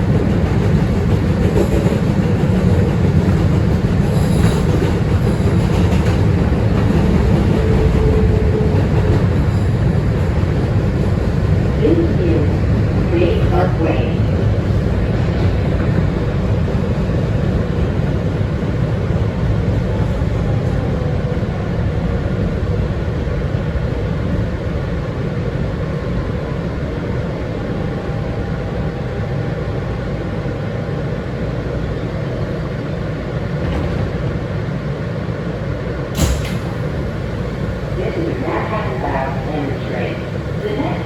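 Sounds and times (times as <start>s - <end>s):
rumble of wheels on rail: 0.0s - 41.0s
sharp click: 36.2s - 36.8s.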